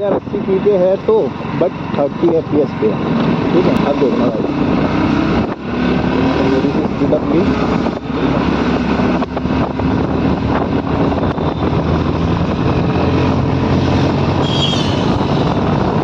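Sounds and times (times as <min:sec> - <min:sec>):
motorcycle engine drone: 0:00.0 - 0:16.0
wind rush: 0:00.0 - 0:16.0.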